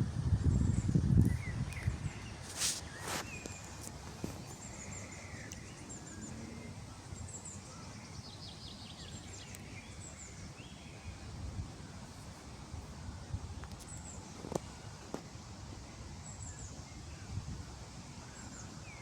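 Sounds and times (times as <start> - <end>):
small birds chirping: 0.4 - 12.7.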